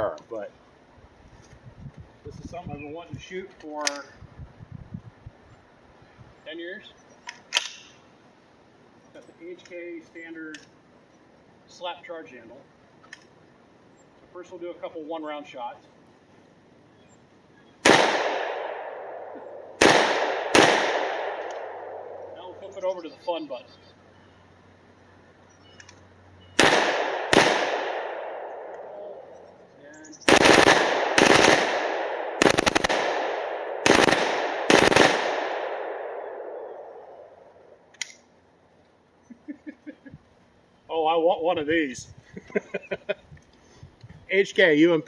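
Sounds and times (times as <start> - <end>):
sharp click: 7.2 - 8.0, 25.7 - 26.1, 37.9 - 38.3
submachine gun shots with echo: 17.8 - 22.3, 26.6 - 29.2, 30.2 - 37.3
submachine gun bursts: 30.3 - 31.8, 32.4 - 33.1.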